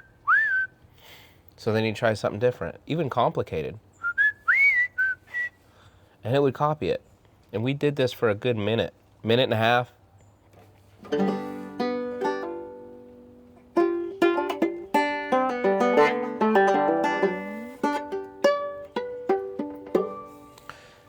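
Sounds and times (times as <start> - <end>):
banjo picking: 11.0 - 21.0.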